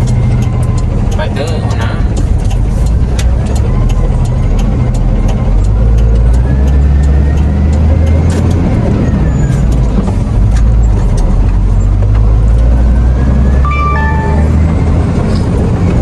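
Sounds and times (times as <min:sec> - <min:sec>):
sharp ticks: 0:00.0 - 0:12.7
truck diesel engine drone: 0:00.0 - 0:16.0.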